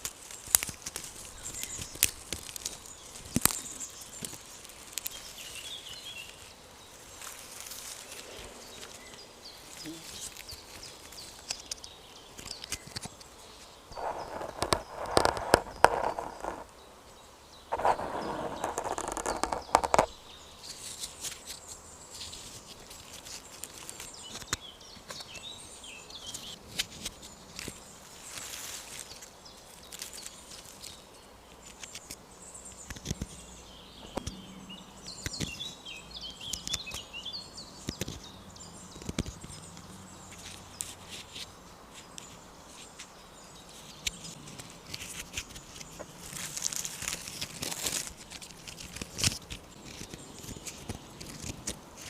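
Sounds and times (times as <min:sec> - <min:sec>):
sharp clicks and crackles: 0:00.0 - 0:06.5, 0:08.8 - 0:13.4, 0:14.0 - 0:16.7, 0:17.8 - 0:25.5, 0:26.2 - 0:33.4, 0:35.0 - 0:37.0, 0:37.8 - 0:43.1, 0:43.8 - 0:52.0
bird chirp: 0:00.0 - 0:52.0
bird chirps: 0:24.0 - 0:44.4.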